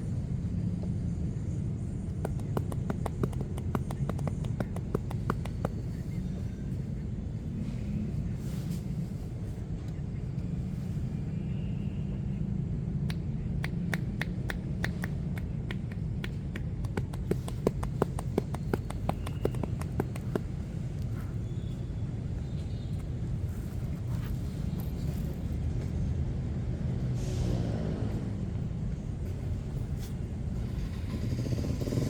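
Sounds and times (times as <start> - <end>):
low rumble of street traffic: 0.0 - 32.0
hands slapping body: 2.1 - 5.9, 13.1 - 20.6.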